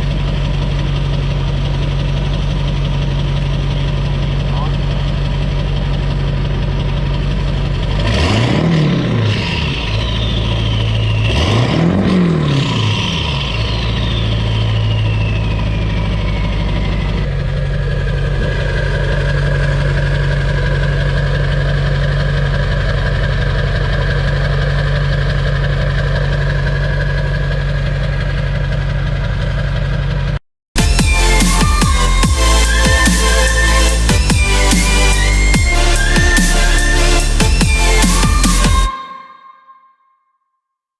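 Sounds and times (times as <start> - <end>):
diesel engine idling and revving: 0.0 - 38.9
turbo whistle: 30.8 - 40.3.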